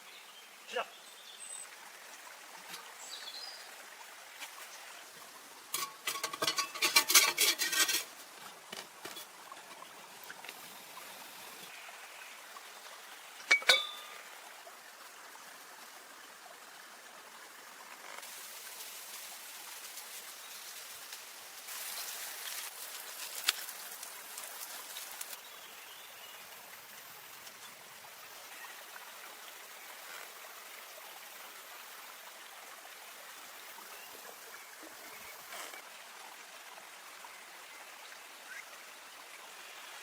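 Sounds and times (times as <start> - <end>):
running water hiss: 0.0 - 40.0
ringing clinks: 13.5 - 14.1.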